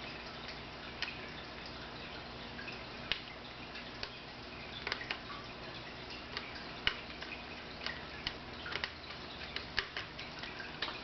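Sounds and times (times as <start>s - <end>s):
light clicks and taps: 3.1s - 5.5s, 6.1s - 11.0s.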